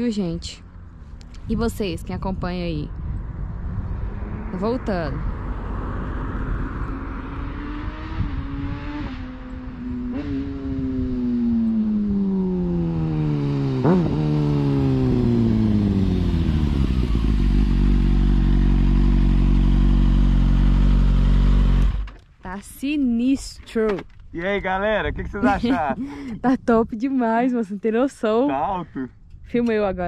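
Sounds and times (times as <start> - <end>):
motorcycle engine revving: 2.9 - 22.2
motorcycle idling: 14.8 - 22.2.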